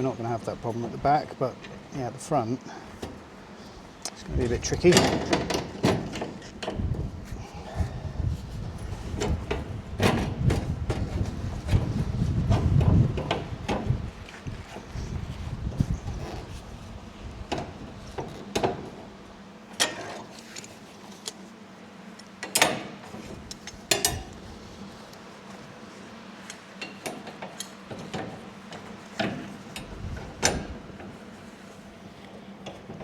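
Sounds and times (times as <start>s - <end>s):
metallic knocks and clanks: 4.7s - 7.0s, 23.9s - 24.4s.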